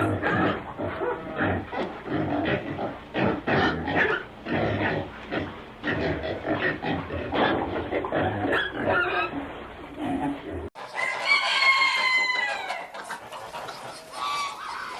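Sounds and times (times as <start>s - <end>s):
pigs grunting: 0.0s - 10.7s.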